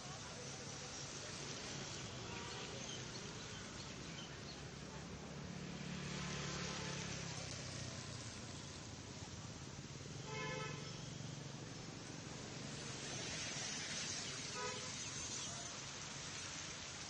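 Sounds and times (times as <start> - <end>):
steady hiss: 10.8 - 17.0.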